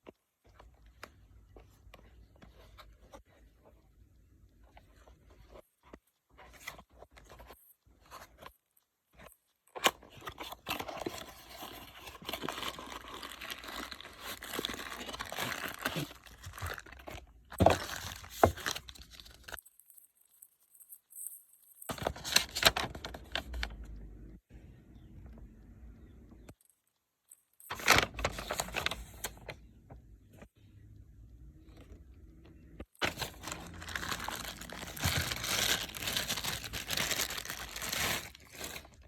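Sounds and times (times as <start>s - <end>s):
packaging torn and crinkled: 10.3s - 19.6s, 33.0s - 39.0s.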